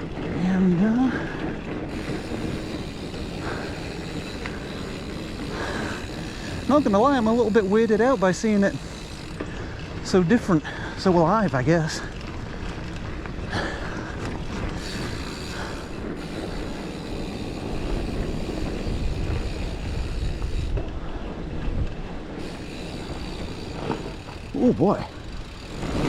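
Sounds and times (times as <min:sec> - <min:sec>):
bike drivetrain rattle: 0:00.0 - 0:26.0
bike tyre rumble on dirt: 0:00.0 - 0:26.0
wind on microphone: 0:14.4 - 0:26.0.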